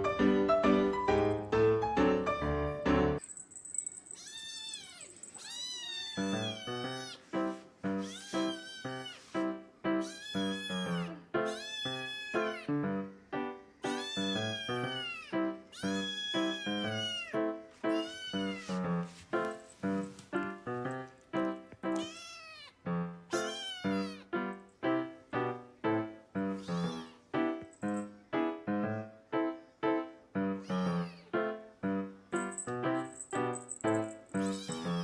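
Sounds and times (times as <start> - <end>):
piano music: 0.0 - 3.2, 6.2 - 35.0
kitten meowing: 4.2 - 7.3, 7.9 - 9.4, 10.0 - 12.8, 13.8 - 18.8, 21.9 - 24.3, 26.5 - 27.2, 30.6 - 31.3, 34.4 - 35.0.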